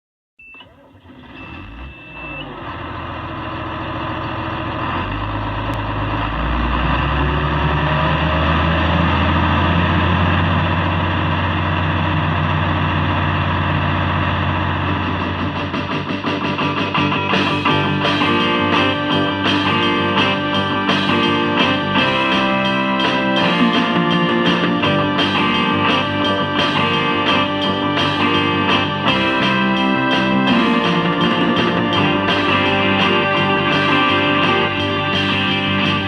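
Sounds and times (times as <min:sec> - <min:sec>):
short high-pitched beep: 0:00.4 - 0:00.7, 0:01.4 - 0:02.5
farm machine engine droning: 0:00.6 - 0:16.0.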